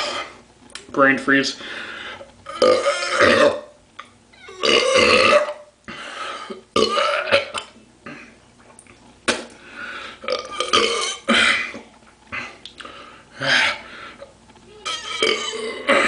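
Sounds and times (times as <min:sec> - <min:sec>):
man belching loudly: 0:02.5 - 0:03.7, 0:04.6 - 0:05.6, 0:06.7 - 0:07.6, 0:10.3 - 0:11.3, 0:15.1 - 0:16.0.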